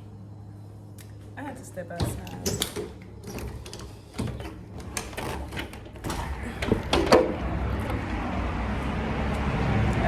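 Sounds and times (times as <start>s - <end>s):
outdoor traffic rumble: 0.0s - 10.0s
door opening and shutting: 2.0s - 7.6s.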